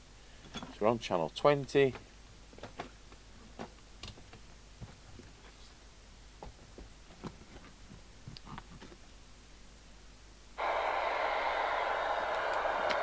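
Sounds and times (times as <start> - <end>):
low mains hum: 0.0 - 13.0.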